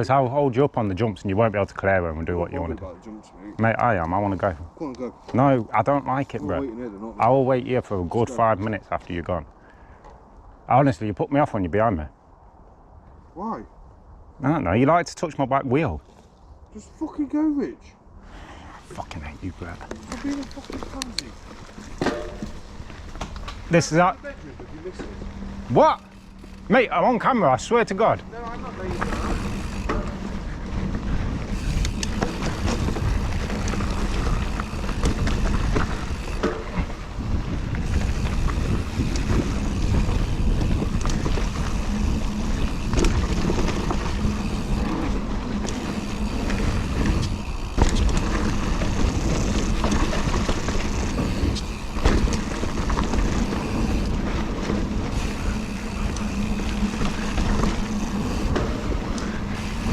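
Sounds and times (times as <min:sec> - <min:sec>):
bike chain rattling: 0:18.3 - 0:59.9
tyres rolling on dirt: 0:18.8 - 0:59.9
wind on microphone: 0:28.1 - 0:59.9.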